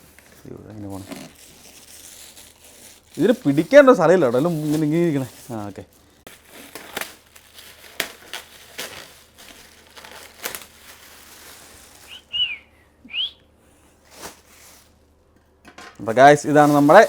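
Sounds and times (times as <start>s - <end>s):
packaging crinkling and rustling: 0.0s - 12.4s, 14.0s - 15.0s, 16.0s - 17.0s
high whistle-like squeaks: 12.1s - 13.4s.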